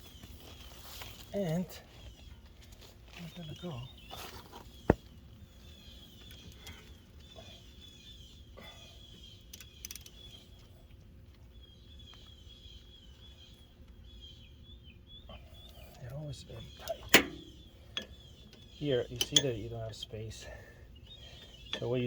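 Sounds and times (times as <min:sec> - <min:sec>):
faint birds chirping: 0:00.0 - 0:22.0.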